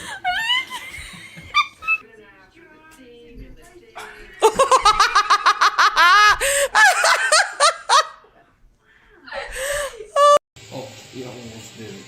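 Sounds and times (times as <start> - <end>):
high-pitched laughter: 0.0 - 2.0, 4.4 - 8.2.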